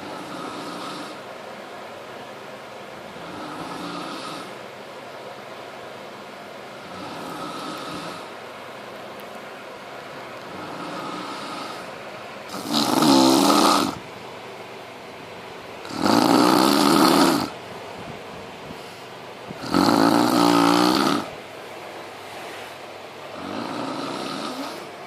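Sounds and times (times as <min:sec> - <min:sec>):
man snoring: 0:00.0 - 0:01.2, 0:03.2 - 0:04.6, 0:06.8 - 0:08.3, 0:10.5 - 0:11.9, 0:12.5 - 0:14.0, 0:15.8 - 0:17.6, 0:19.6 - 0:21.3, 0:23.3 - 0:24.9.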